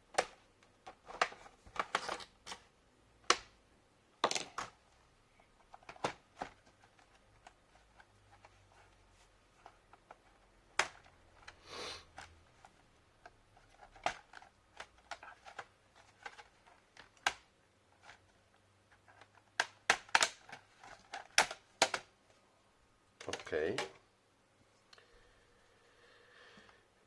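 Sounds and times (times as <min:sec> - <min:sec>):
plastic clicks and snaps: 0:19.3 - 0:22.1.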